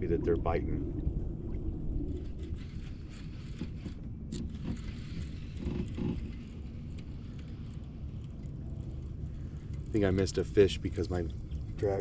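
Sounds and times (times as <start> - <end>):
low steady rumble: 0.0 - 12.0
short creak: 2.2 - 8.0
fishing gear clicks and scrapes: 2.2 - 10.7.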